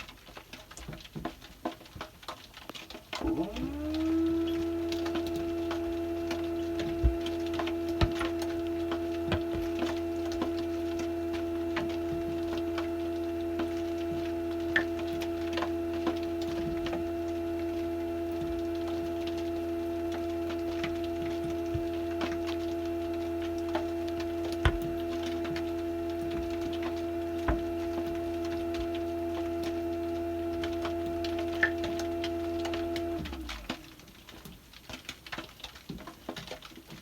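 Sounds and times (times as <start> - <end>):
dishwasher motor humming: 3.2 - 35.0.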